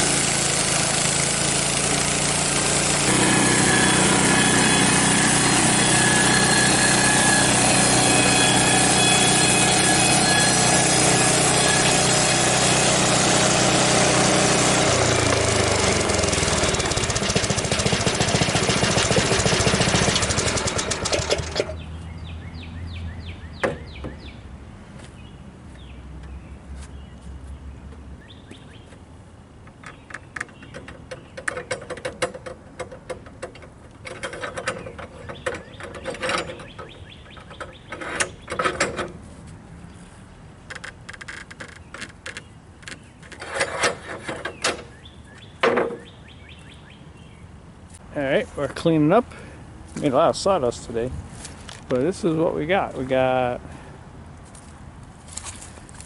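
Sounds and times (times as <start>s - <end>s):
band saw cutting wood: 0.0s - 21.8s, 43.3s - 45.0s
sawmill engine running: 0.0s - 21.8s.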